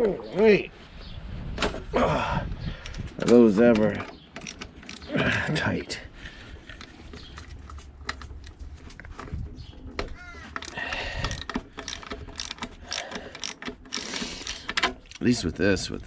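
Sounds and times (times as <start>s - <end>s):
wind rumbling on microphone: 0.9s - 3.3s, 6.1s - 11.5s
socket ratchet clicking and knocking: 3.8s - 5.1s, 10.5s - 15.2s.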